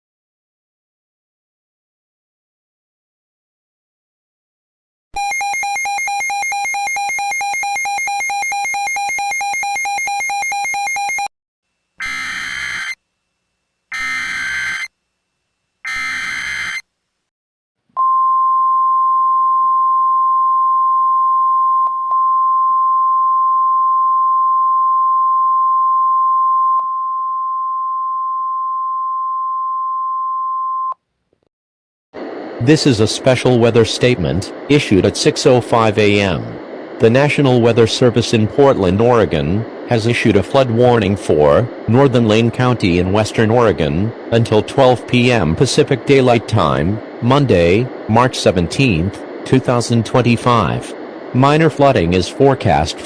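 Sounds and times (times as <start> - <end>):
steady warning alarm tone: 5.2 - 11.3, 12.0 - 13.0, 13.9 - 14.9, 15.8 - 16.8
buzzy pulsing alert tone: 12.0 - 13.0, 13.9 - 14.9, 15.9 - 16.8
screeching digital data bursts: 12.0 - 13.0, 13.9 - 14.9, 15.9 - 16.8.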